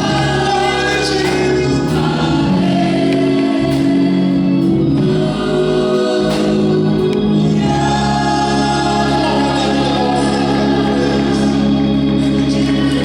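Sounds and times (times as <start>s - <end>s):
choir singing gospel music: 0.0s - 13.0s.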